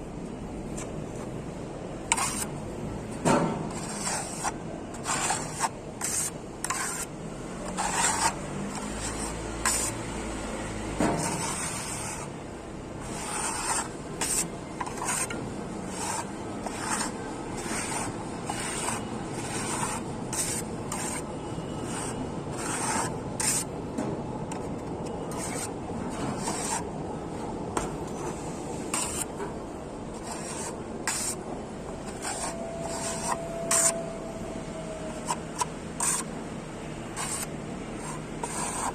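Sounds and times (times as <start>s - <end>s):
plastering tool scraping wall: 2.1s - 2.5s, 3.3s - 12.3s, 13.0s - 23.7s, 25.3s - 26.8s, 28.0s - 29.3s, 30.2s - 31.4s, 32.0s - 34.0s, 35.2s - 36.3s, 37.1s - 38.9s.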